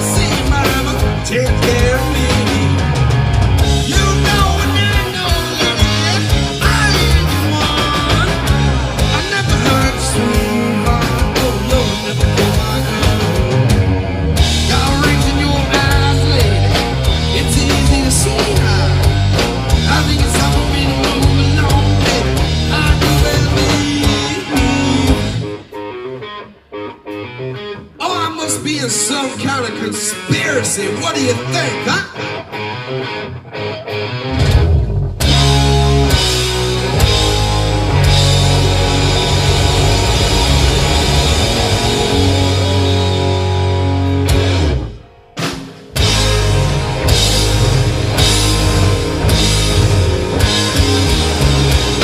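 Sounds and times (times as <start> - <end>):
drums keeping a steady beat: 0.0 - 25.8, 34.4 - 52.0
bending electric guitar notes: 0.0 - 52.0
live rock band playing: 0.0 - 52.0
drum hits: 35.2 - 52.0.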